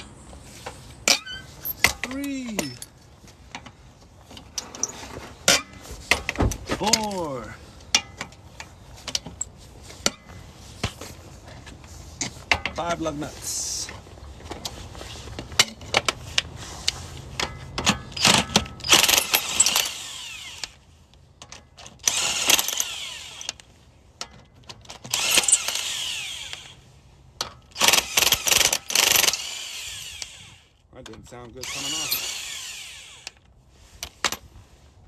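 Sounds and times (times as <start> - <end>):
impact wrench bursts: 17.9 - 20.8, 22.0 - 23.6, 25.1 - 26.8, 27.6 - 30.8, 31.6 - 33.4.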